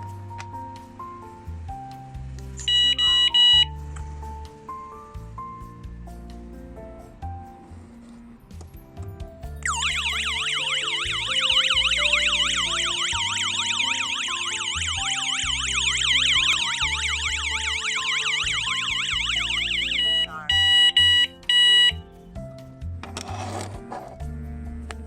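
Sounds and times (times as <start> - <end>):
alarm siren wailing: 2.6 - 3.7, 9.7 - 22.0
short steady beeps: 2.6 - 3.7, 9.7 - 22.0.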